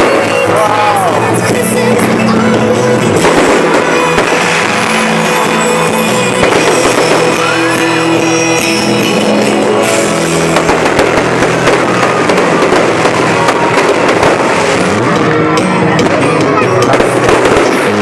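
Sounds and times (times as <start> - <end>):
fireworks bursting and crackling: 0.0 - 18.0
show music over loudspeakers: 0.0 - 18.0.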